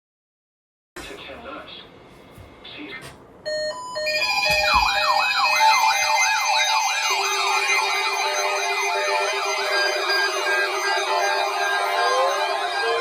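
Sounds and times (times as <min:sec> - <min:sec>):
warbling siren tone: 0:03.5 - 0:13.0.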